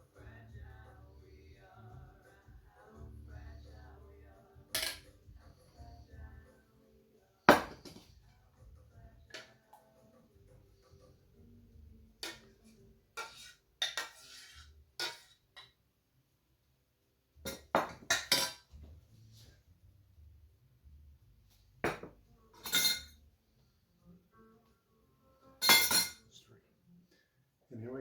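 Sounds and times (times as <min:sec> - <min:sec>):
dishes and cutlery clinking: 0:04.7 - 0:05.4, 0:07.5 - 0:08.1, 0:12.2 - 0:15.8, 0:17.4 - 0:18.8, 0:21.8 - 0:23.2, 0:25.6 - 0:26.3.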